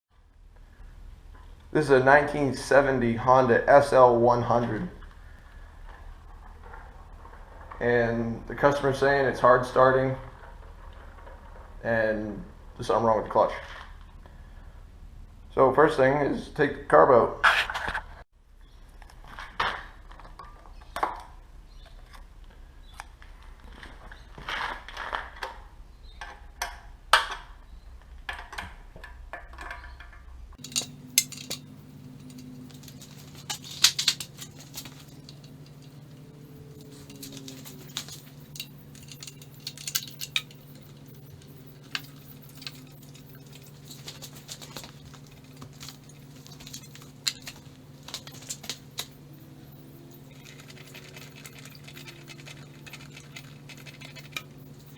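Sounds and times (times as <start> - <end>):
hand tools clinking against metal: 30.6 - 54.9
steady low hum: 30.6 - 54.9.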